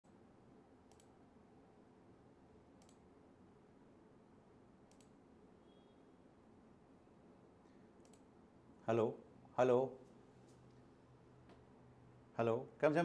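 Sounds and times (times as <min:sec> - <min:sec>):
faint room hum: 0:00.0 - 0:13.0.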